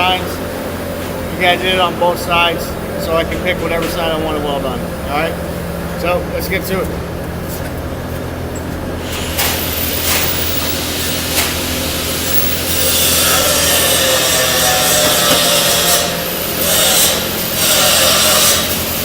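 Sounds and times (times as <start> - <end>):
welding machine hum: 6.9 - 19.0
welding arc crackling: 9.0 - 19.0.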